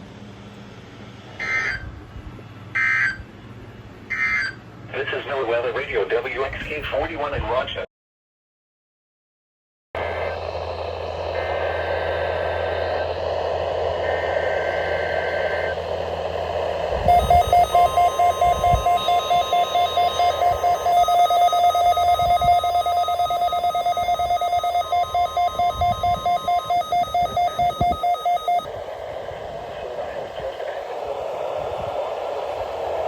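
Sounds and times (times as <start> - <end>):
rapid electronic alert beeping: 1.4 - 1.8, 17.1 - 28.7
radio static: 4.9 - 7.8, 11.3 - 16.0, 17.0 - 28.7, 29.6 - 31.3
faint steady data tones: 17.0 - 28.7.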